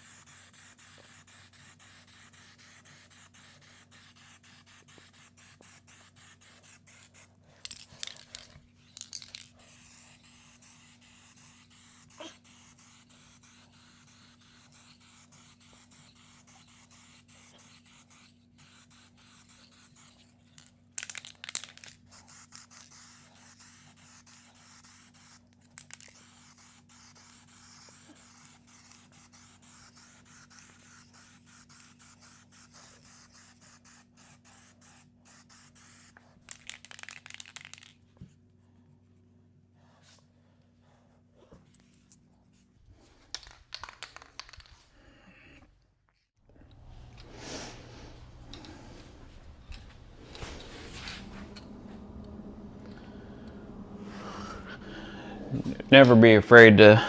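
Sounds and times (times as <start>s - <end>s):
spray gun hissing: 0.0s - 7.3s, 9.6s - 20.2s, 22.1s - 25.4s, 26.1s - 36.2s
low hum: 46.5s - 57.0s.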